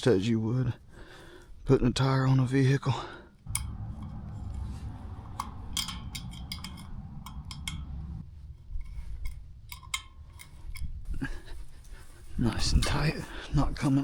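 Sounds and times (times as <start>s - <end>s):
low rumble: 3.4s - 13.4s
metallic clicks of nuts tightened: 9.2s - 11.2s.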